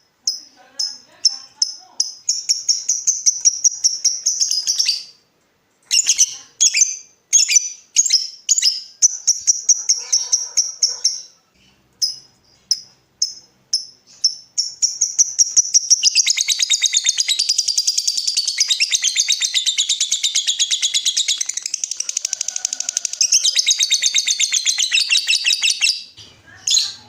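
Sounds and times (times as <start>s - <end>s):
bird chirping and chattering: 0.2s - 5.2s, 5.8s - 27.0s.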